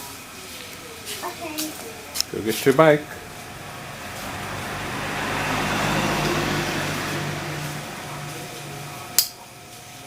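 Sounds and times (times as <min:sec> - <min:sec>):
car driving past: 0:01.8 - 0:09.7.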